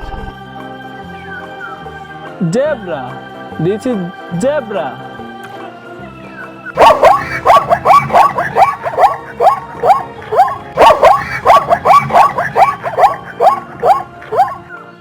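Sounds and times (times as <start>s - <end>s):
zebra yelping barks: 6.8s - 14.7s.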